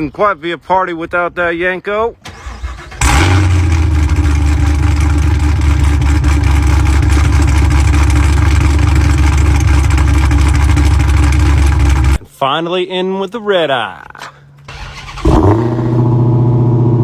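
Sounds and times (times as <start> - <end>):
car engine idling: 2.3 - 12.2.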